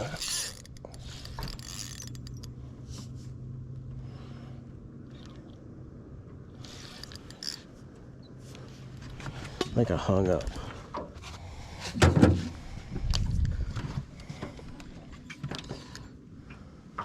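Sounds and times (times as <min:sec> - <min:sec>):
fishing reel cranking: 0:00.0 - 0:02.5, 0:06.6 - 0:07.7
rod and reel scraping: 0:00.0 - 0:03.0, 0:06.6 - 0:07.7
steady low hum: 0:00.0 - 0:17.0.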